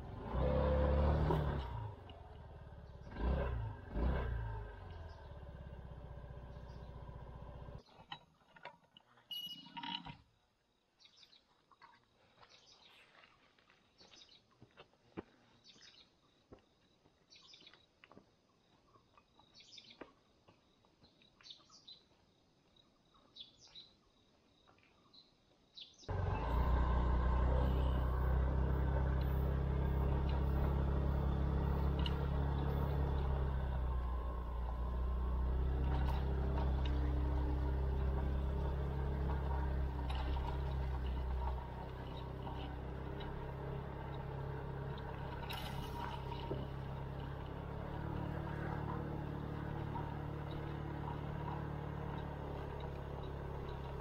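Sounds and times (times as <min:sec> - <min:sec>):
motorcycle engine running: 0:00.0 - 0:07.8, 0:26.1 - 0:54.0.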